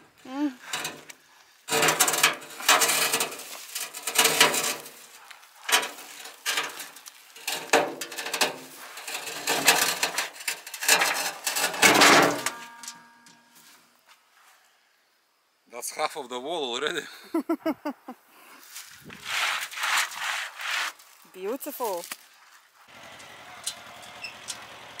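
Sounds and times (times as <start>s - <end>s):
heavy stones scraping and knocking: 1.7s - 12.5s.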